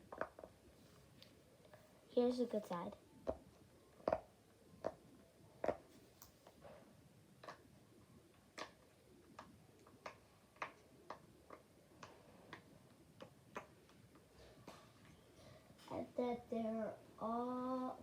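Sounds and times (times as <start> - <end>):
fidget toy bubbles popping: 0.0 - 0.6, 3.2 - 5.0.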